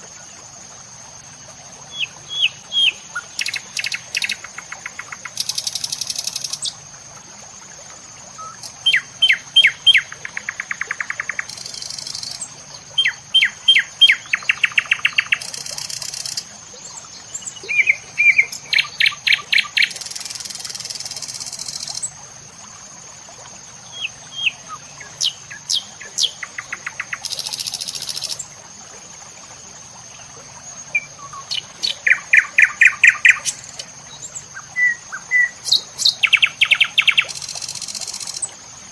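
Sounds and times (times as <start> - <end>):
birds chirping: 8.4 - 20.4, 23.9 - 28.4, 30.3 - 38.5.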